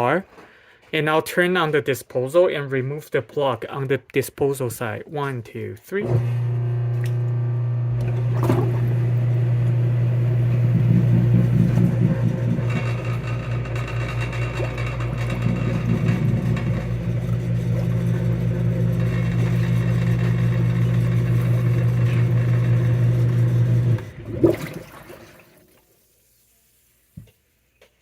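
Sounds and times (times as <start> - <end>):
garbage disposal running: 6.0 - 25.8.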